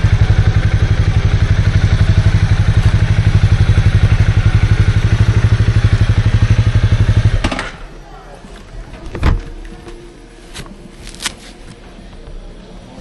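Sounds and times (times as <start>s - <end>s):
motorcycle engine idling: 0.0s - 8.2s.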